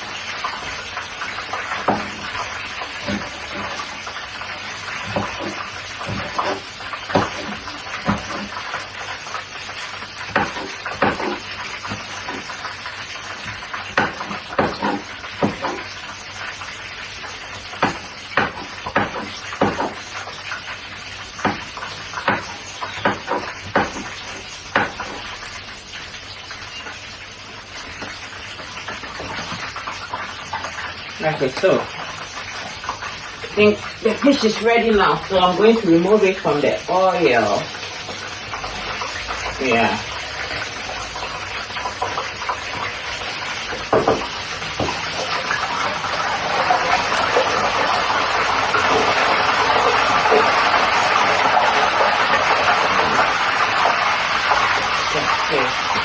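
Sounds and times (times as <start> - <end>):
fish sizzling in hot oil: 0.0 - 56.0
knife chopping on a board: 10.3 - 12.4, 14.0 - 15.8, 17.8 - 20.0, 21.4 - 24.1, 24.7 - 25.2.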